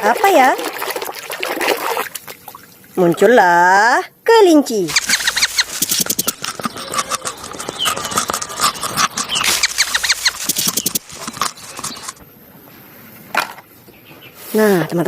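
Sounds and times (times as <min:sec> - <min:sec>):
scrubbing plastic toy: 0:04.9 - 0:12.2
short squeaks: 0:04.9 - 0:12.2.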